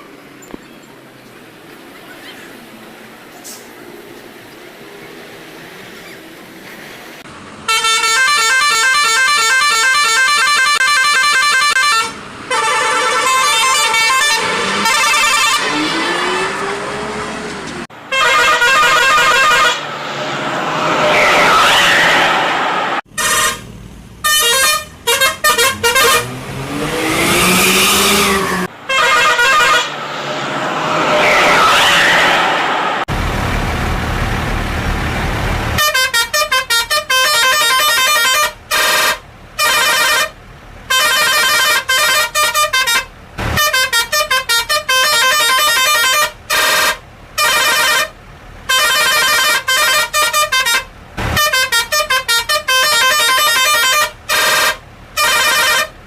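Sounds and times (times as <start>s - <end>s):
musical bus horns chirping tunes: 7.7s - 17.0s, 18.0s - 19.9s, 23.1s - 30.0s, 35.8s - 56.0s
low rumbling noise: 29.9s - 35.8s.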